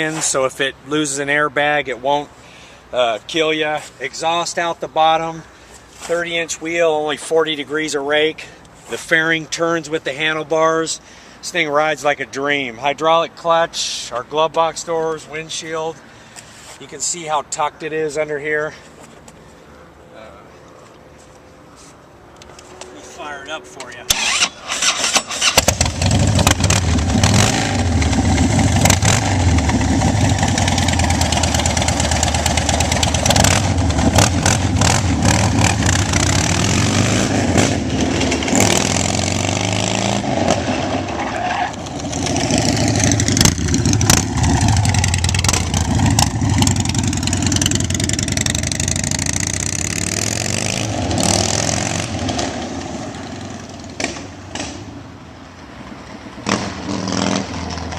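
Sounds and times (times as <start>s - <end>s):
starter motor cranking: 24.1s - 26.8s
motorcycle engine revving: 24.1s - 54.9s, 56.4s - 57.9s.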